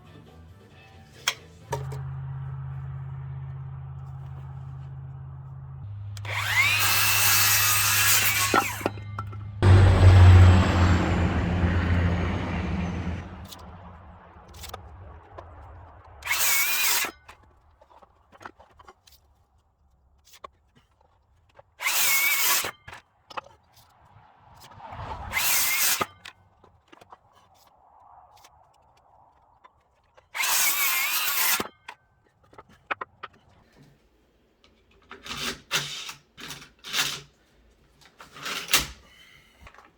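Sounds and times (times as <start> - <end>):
reciprocating saw cutting wood: 2.0 - 18.9, 20.4 - 27.8, 29.8 - 33.3
cordless drill driving screws: 6.2 - 8.9.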